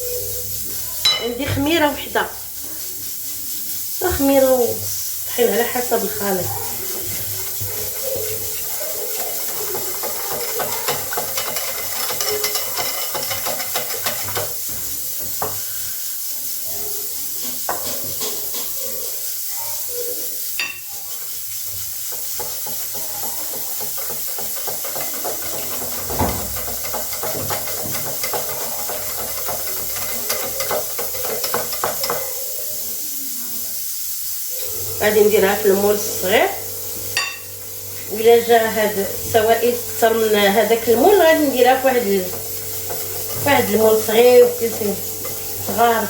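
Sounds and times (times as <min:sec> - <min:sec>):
steady hiss: 0:00.0 - 0:11.5, 0:14.0 - 0:46.0
utensil scraping and clicking bowl: 0:05.9 - 0:15.6, 0:17.4 - 0:19.0, 0:21.6 - 0:32.4, 0:39.5 - 0:46.0.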